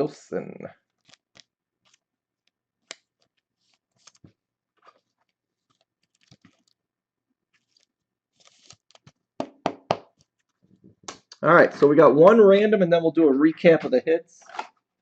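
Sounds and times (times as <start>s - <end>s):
trading cards rustling: 0.8s - 6.8s, 7.4s - 9.3s.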